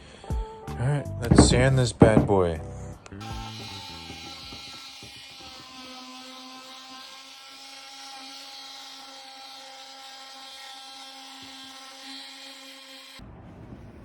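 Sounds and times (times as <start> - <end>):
electric sander on wood: 3.2 - 13.2.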